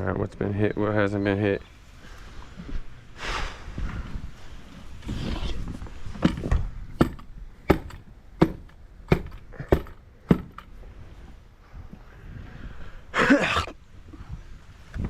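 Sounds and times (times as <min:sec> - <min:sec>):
stamp mats thudding on concrete: 0:06.2 - 0:10.7.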